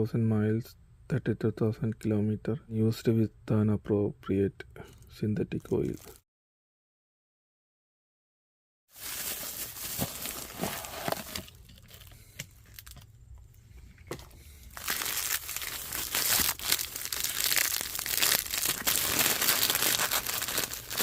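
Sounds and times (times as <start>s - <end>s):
plastic wrapping crinkling: 8.9s - 13.0s, 14.6s - 21.0s.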